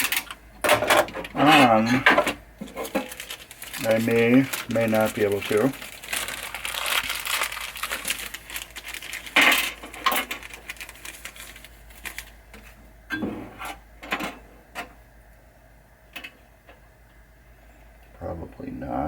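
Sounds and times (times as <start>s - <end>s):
crinkly rustling: 0.0s - 0.4s, 1.0s - 12.8s.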